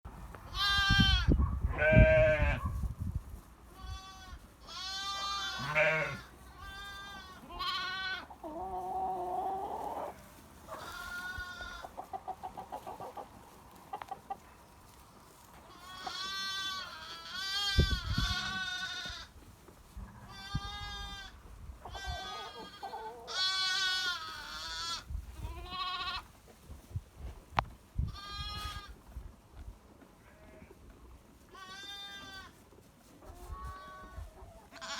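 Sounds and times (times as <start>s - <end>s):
goat bleating: 0.5s - 2.6s, 3.7s - 8.8s, 9.8s - 11.9s, 15.6s - 19.3s, 20.1s - 26.3s, 28.1s - 29.0s, 31.5s - 32.6s, 33.4s - 34.9s.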